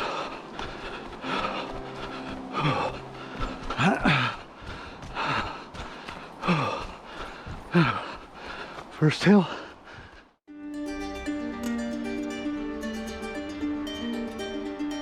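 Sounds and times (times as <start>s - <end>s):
person breathing hard and gasping: 0.0s - 10.4s.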